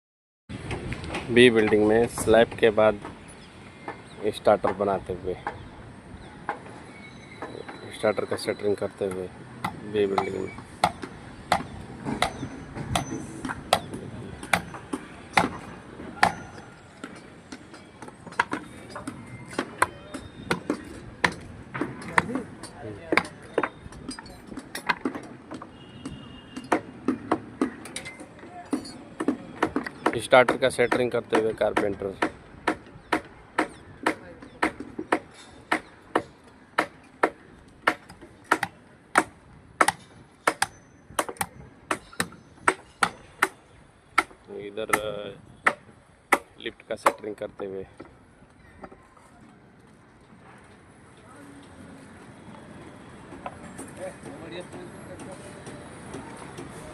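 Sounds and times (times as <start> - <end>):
hammer striking wood: 9.6 - 17.2, 28.7 - 43.6, 44.2 - 47.3.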